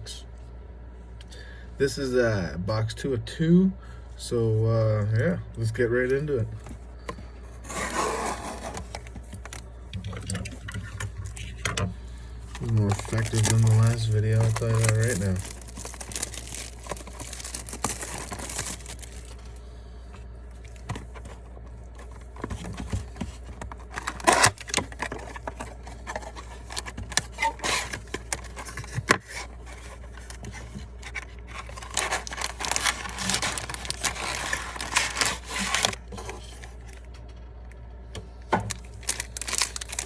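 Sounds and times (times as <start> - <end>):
steady low hum: 0.0 - 40.0
plastic wrap and cardboard tearing: 7.6 - 11.4, 12.5 - 19.5, 22.0 - 37.0, 38.7 - 40.0.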